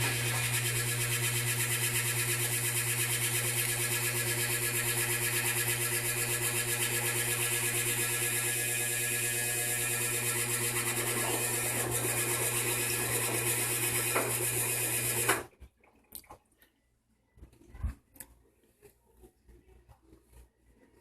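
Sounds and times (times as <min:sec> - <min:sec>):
washer-dryer humming and hissing: 0:00.0 - 0:15.8.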